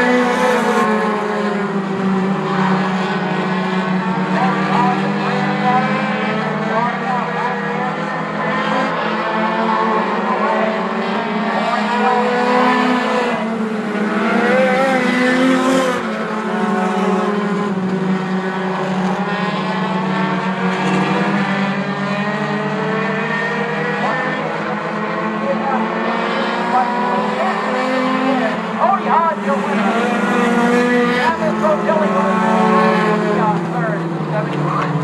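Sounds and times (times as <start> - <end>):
stock cars racing: 0.0 - 35.0.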